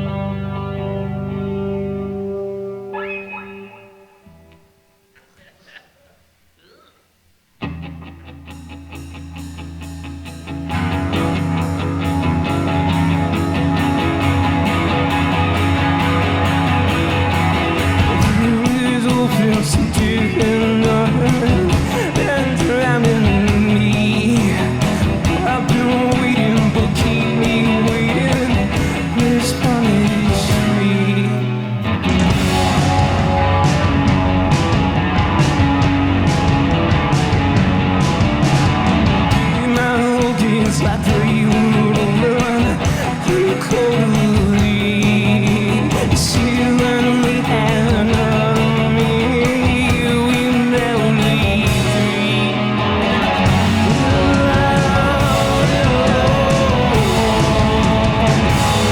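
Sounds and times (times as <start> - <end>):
live rock band playing: 0.0 - 4.8, 7.6 - 58.9
electric guitar: 0.0 - 5.8, 7.6 - 58.9
drums: 0.0 - 58.9.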